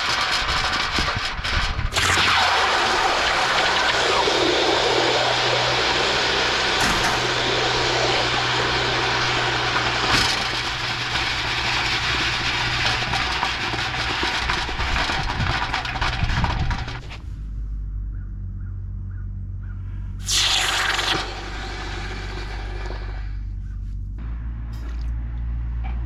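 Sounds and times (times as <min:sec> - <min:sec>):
low hum: 0:01.7 - 0:26.0
forge burner hissing: 0:01.9 - 0:14.8, 0:20.2 - 0:23.6.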